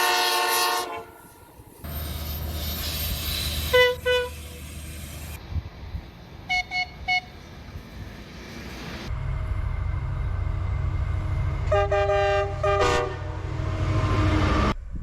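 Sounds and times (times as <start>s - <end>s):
higher-pitched train horn toots: 0.0s - 1.4s, 3.7s - 4.6s, 11.6s - 14.6s
train horn blasts: 0.0s - 1.4s, 3.7s - 4.5s, 11.6s - 14.5s
low rumble: 9.1s - 15.0s.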